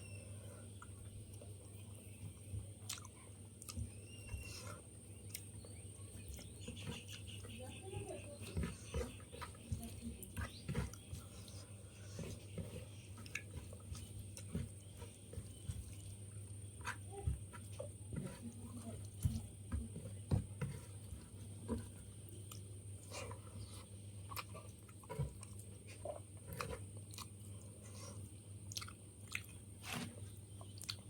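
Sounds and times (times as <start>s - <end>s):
person chewing wetly: 2.4s - 4.5s, 5.1s - 7.4s, 10.2s - 17.0s, 21.7s - 28.0s, 28.6s - 31.0s.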